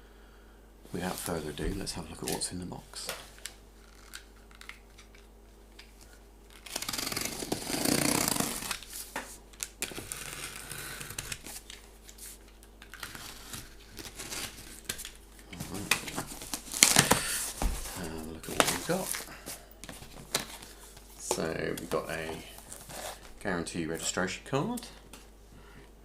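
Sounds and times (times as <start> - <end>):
cardboard packaging tearing: 6.5 - 9.0, 9.6 - 11.8, 12.8 - 20.7.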